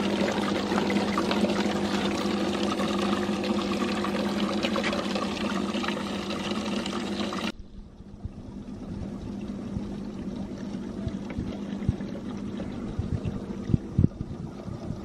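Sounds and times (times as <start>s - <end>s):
steady low hum: 0.0s - 15.0s
water pouring and trickling: 0.0s - 15.0s.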